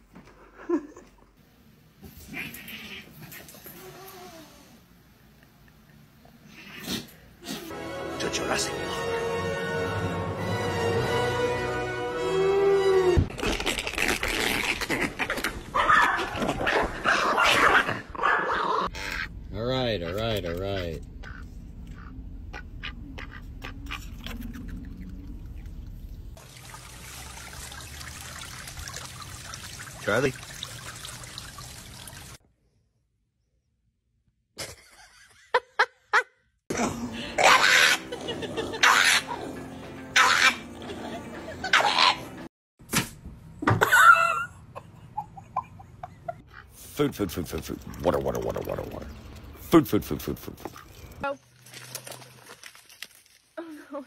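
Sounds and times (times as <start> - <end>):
dog barking and yipping: 15.7 - 18.5, 40.2 - 40.7.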